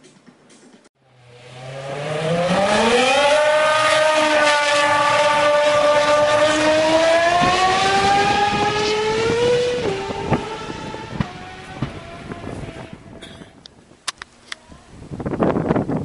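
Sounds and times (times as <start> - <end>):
racing car engine at high revs: 1.0 - 13.3.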